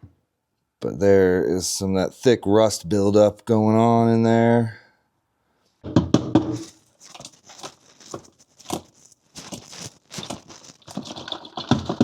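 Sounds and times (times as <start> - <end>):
scraping and rustling: 6.5 - 12.0.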